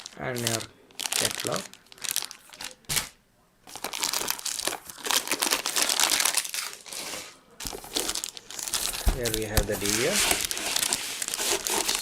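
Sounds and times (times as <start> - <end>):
packaging crinkling: 0.0 - 3.1, 3.7 - 12.0.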